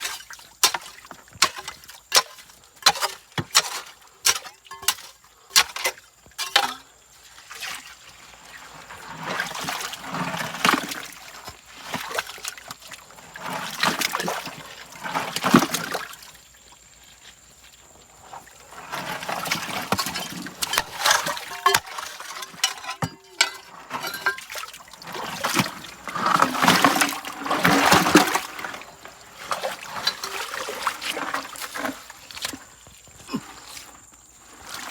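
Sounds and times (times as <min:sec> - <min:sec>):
water sloshing in a pan: 0:00.0 - 0:34.9
stones clicking in a pan: 0:19.9 - 0:24.5.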